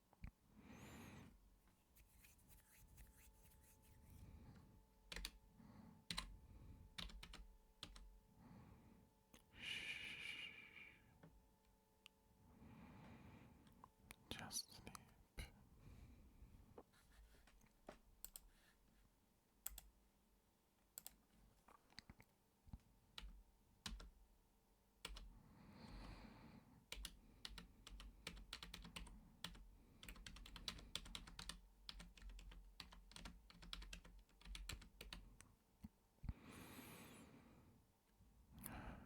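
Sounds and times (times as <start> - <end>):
soft breaths: 0.5 - 3.1, 12.4 - 13.9, 15.0 - 17.6, 25.2 - 28.1, 36.2 - 37.9, 38.5 - 39.0
computer keyboard typing: 5.1 - 5.4, 6.1 - 6.3, 6.9 - 8.1, 18.2 - 18.5, 19.6 - 19.9, 21.0 - 21.2, 23.2 - 24.2, 25.0 - 25.3, 26.9 - 35.3.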